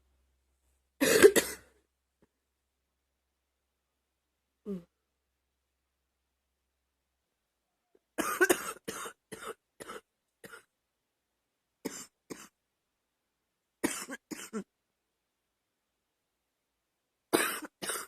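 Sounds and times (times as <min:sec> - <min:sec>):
girl coughing: 0:01.0 - 0:01.7, 0:08.2 - 0:10.7, 0:13.8 - 0:14.7, 0:17.4 - 0:18.0.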